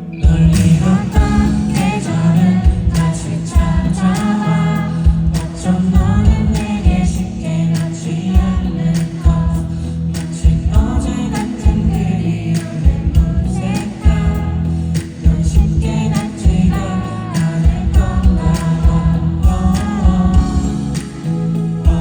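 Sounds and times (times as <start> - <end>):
bass line: 0.0 - 22.0
live band playing: 0.0 - 22.0
man singing: 0.0 - 22.0
drum hits: 0.2 - 4.4, 5.1 - 7.3.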